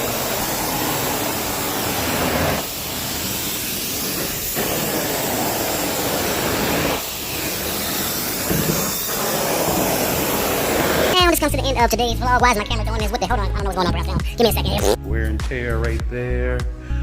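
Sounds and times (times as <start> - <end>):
carpet extraction wand hissing: 0.0 - 11.2.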